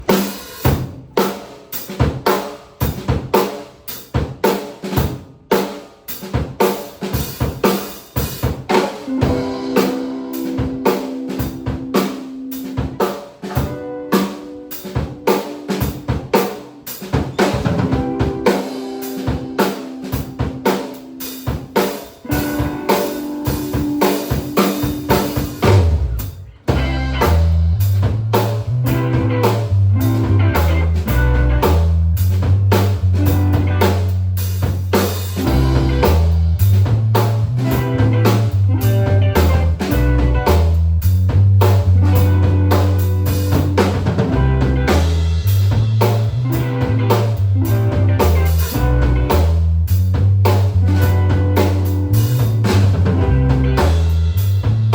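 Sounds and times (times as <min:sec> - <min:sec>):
drum kit playing: 0:00.0 - 0:54.9
held notes: 0:09.1 - 0:27.8, 0:33.2 - 0:34.1, 0:41.9 - 0:49.6, 0:50.8 - 0:54.9
heavy low bass line: 0:25.0 - 0:54.9.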